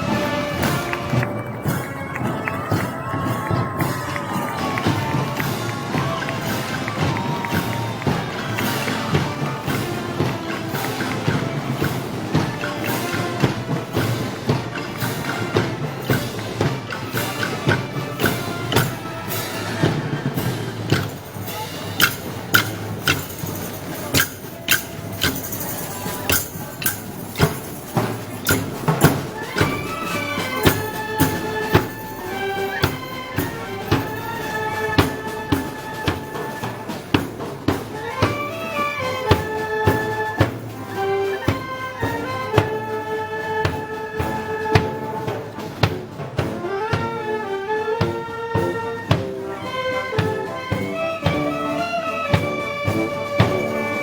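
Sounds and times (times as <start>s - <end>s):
band drumbeat: 0.0s - 54.0s
cymbal strikes: 14.9s - 32.2s.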